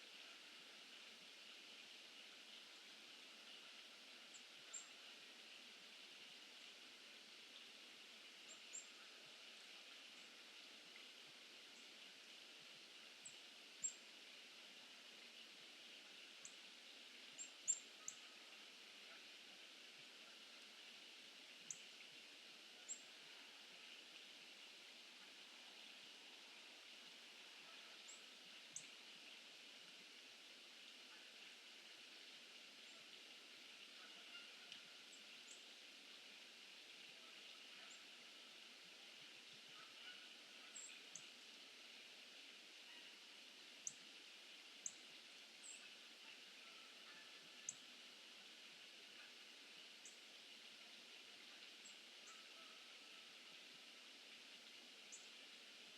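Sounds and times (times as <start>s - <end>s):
steady hiss: 0.0s - 55.9s.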